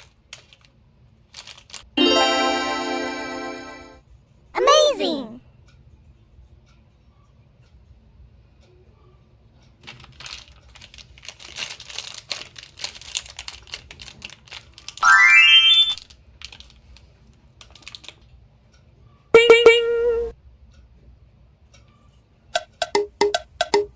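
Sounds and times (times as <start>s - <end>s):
candy wrapper crinkling: 0.0s - 2.0s, 9.8s - 15.0s, 16.4s - 17.0s, 17.6s - 18.3s
rising pitched sound: 15.0s - 16.0s.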